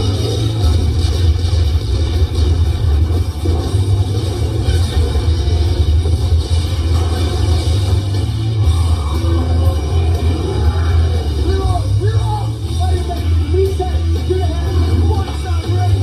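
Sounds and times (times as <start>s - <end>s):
rock music with heavy bass: 0.0s - 16.0s
person singing and shouting: 9.1s - 16.0s.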